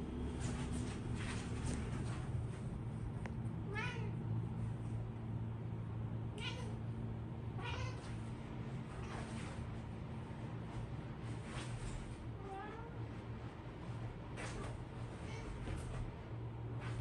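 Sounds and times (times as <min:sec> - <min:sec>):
steady low hum: 0:00.0 - 0:17.0
cat meowing: 0:03.7 - 0:04.2, 0:06.4 - 0:06.8, 0:07.6 - 0:08.1.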